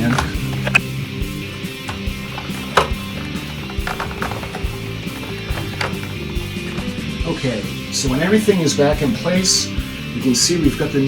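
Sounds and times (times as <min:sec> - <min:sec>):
parts clicking when handled: 0:00.0 - 0:06.6
background music: 0:00.0 - 0:11.0.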